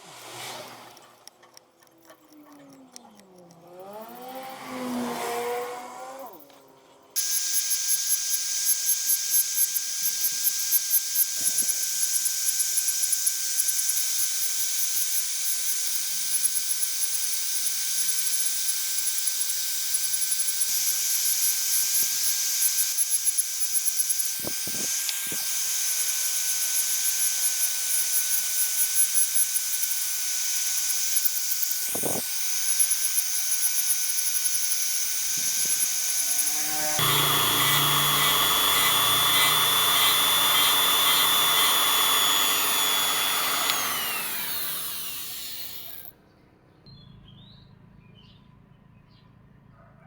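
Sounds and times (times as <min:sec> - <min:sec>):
electric grinder whining: 0:07.2 - 0:46.1.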